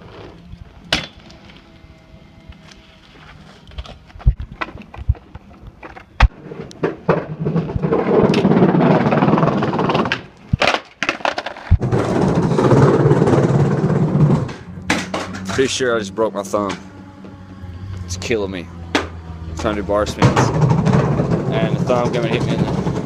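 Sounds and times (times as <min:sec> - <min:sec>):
bike knocks and clanks: 0:00.9 - 0:01.3, 0:11.7 - 0:15.8
tyres rolling on wet pavement: 0:06.4 - 0:16.0, 0:19.0 - 0:23.0.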